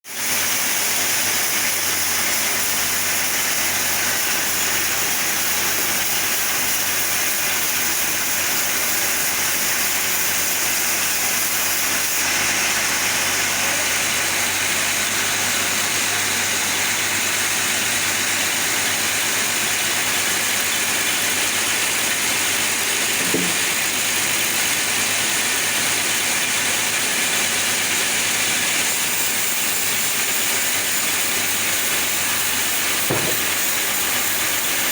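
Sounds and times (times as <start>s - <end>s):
chainsaw cutting log: 0.1s - 34.9s.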